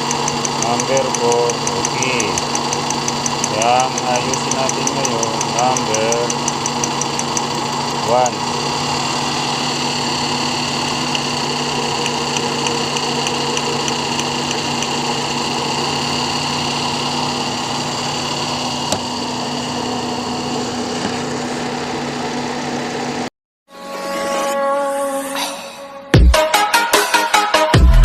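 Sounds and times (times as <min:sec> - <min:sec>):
faint regular ticking: 0:00.0 - 0:08.1
car engine idling: 0:00.0 - 0:23.3.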